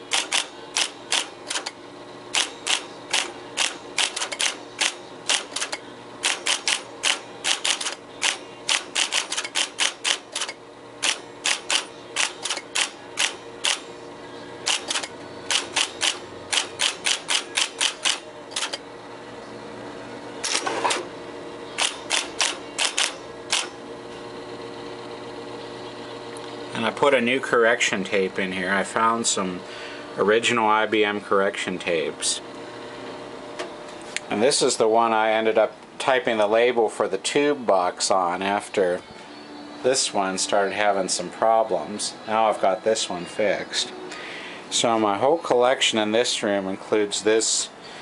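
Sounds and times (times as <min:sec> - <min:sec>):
typewriter motor hum: 0:00.0 - 0:14.0, 0:14.6 - 0:18.8, 0:20.4 - 0:23.8
typewriter clacking: 0:00.1 - 0:13.8, 0:14.7 - 0:18.8, 0:21.8 - 0:23.7
mechanical whir: 0:14.6 - 0:18.9, 0:20.3 - 0:24.9.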